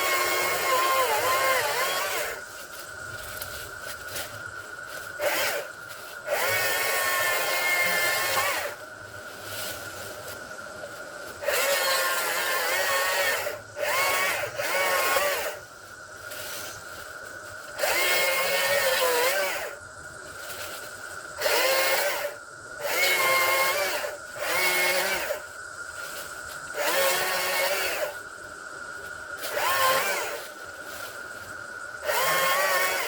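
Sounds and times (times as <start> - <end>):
electric chainsaw cutting wood: 0.0 - 2.4, 5.1 - 8.8, 11.4 - 15.6, 17.8 - 19.8, 21.4 - 25.5, 26.7 - 28.2, 29.4 - 30.6, 32.0 - 33.0.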